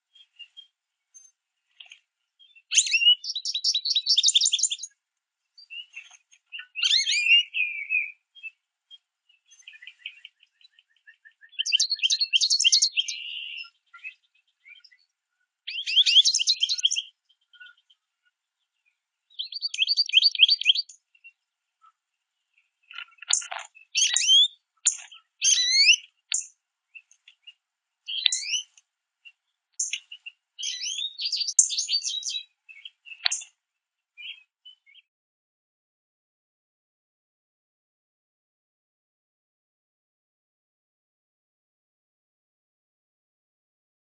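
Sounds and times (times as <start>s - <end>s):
finches chirping and singing: 0.1s - 5.0s, 5.6s - 33.5s, 34.2s - 35.1s.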